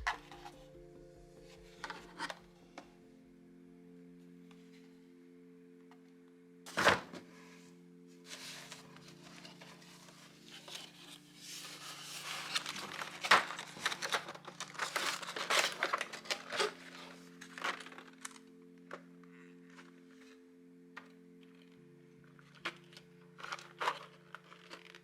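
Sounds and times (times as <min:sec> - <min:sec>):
soft background music: 0:00.0 - 0:25.0
packaging crinkling and rustling: 0:08.3 - 0:19.0, 0:22.5 - 0:25.0.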